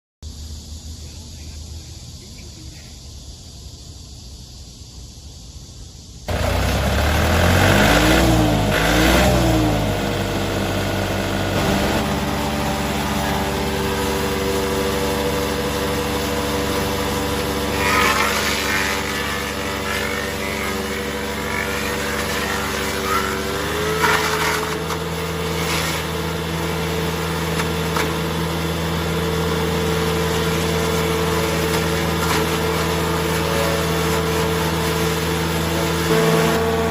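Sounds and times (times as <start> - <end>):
diesel engine starting and running: 6.0 - 36.9.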